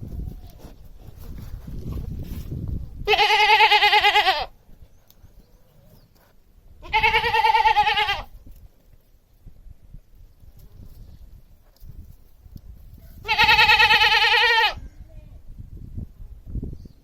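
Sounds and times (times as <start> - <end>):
goat bleating: 3.0 - 4.5, 6.8 - 8.3, 13.2 - 14.8.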